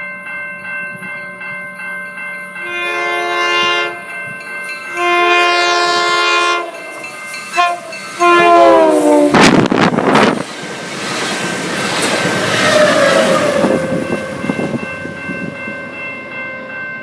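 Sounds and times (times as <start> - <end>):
train horn blasts: 2.6 - 4.0, 4.9 - 10.3
train rushing by: 2.8 - 17.0.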